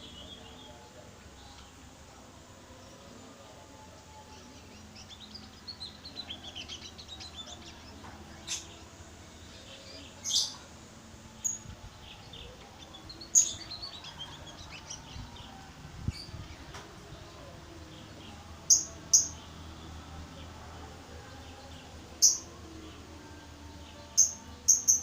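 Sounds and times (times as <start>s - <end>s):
bird twittering song: 4.3s - 10.7s, 11.3s - 16.8s, 23.8s - 25.0s.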